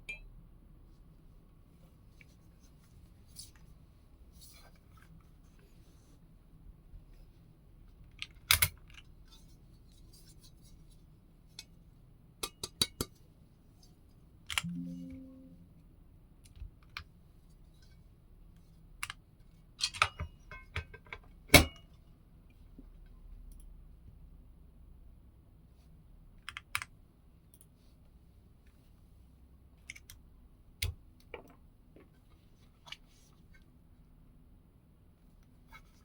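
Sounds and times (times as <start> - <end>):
short low hum: 14.6 - 16.1.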